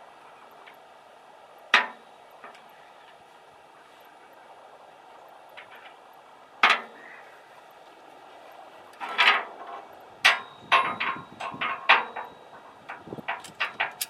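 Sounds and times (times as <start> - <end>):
metal hardware clanking: 9.0 - 14.0.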